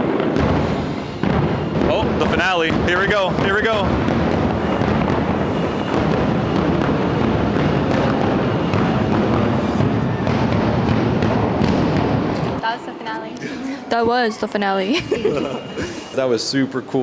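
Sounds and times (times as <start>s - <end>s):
fireworks barrage: 0.0s - 12.9s.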